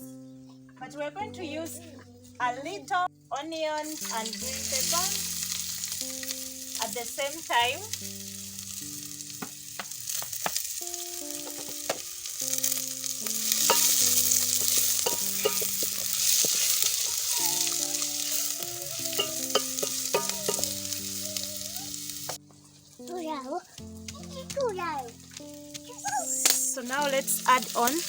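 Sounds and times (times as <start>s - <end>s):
vegetables sizzling in oil: 3.8s - 28.0s
stirring clicks against pan: 9.8s - 21.2s.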